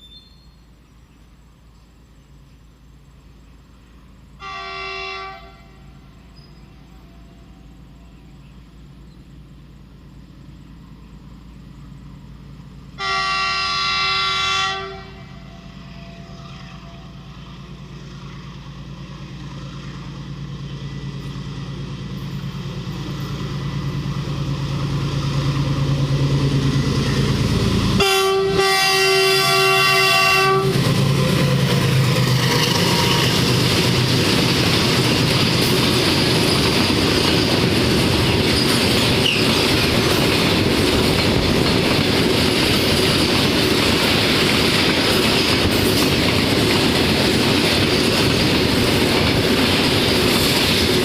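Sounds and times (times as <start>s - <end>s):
diesel locomotive running: 0.0s - 51.0s
locomotive horn: 4.4s - 6.2s, 13.0s - 17.4s, 28.0s - 30.9s, 32.4s - 33.4s.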